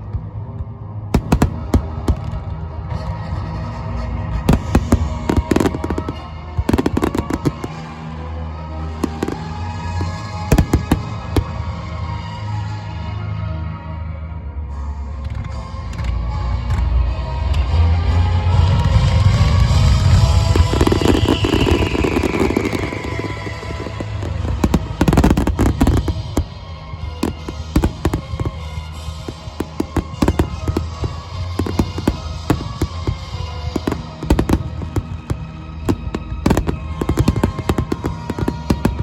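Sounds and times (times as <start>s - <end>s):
music over loudspeakers: 1.2s - 2.4s, 4.5s - 8.1s, 9.0s - 11.6s, 19.8s - 39.0s
rapid crackling pops: 1.2s - 2.4s, 4.5s - 7.9s, 9.0s - 11.5s, 20.2s - 26.6s, 27.2s - 39.0s
firework burst: 1.2s - 2.5s, 4.5s - 8.0s, 9.0s - 11.7s, 19.8s - 39.0s.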